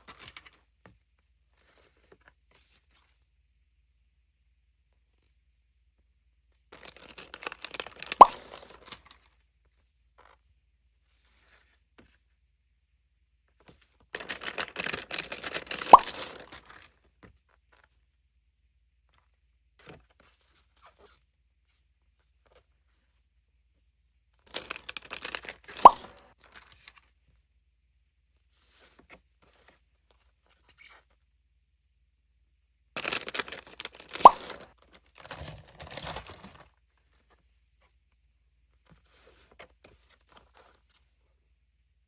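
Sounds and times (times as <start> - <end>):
plastic packaging tearing: 14.2 - 16.8, 24.5 - 26.2, 33.0 - 36.7.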